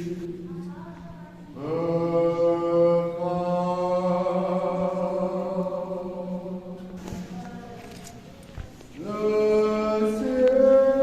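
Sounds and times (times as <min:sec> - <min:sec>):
low chanting drone: 0:00.0 - 0:07.0.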